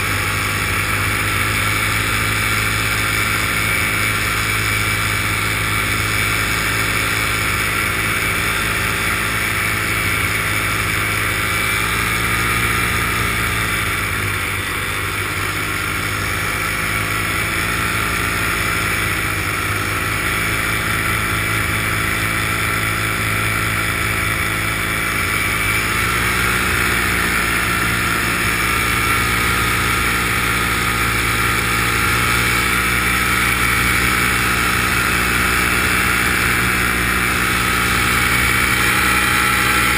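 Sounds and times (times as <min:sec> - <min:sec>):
small aircraft engine and propeller: 0:00.0 - 0:39.9.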